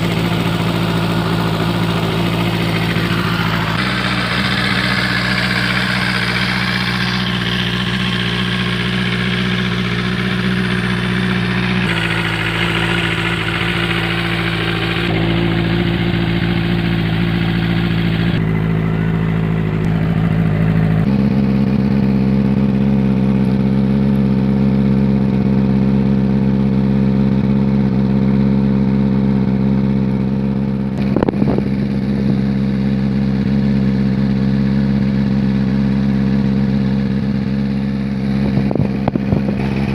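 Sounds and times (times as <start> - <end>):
motorcycle engine and exhaust: 0.0 - 39.9
motorcycle revs blip: 30.9 - 32.4.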